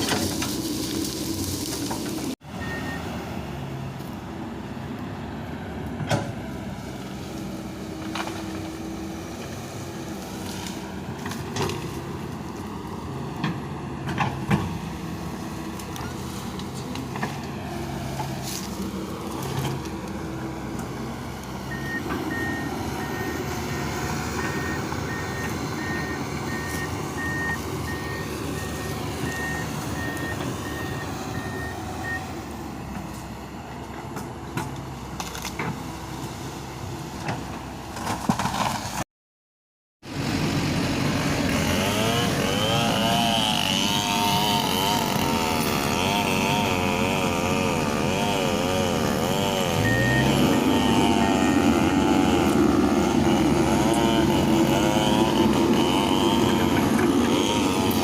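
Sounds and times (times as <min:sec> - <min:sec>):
excavator engine running: 0:00.0 - 0:39.0, 0:40.0 - 0:58.0
travel alarm beeping: 0:21.7 - 0:23.4.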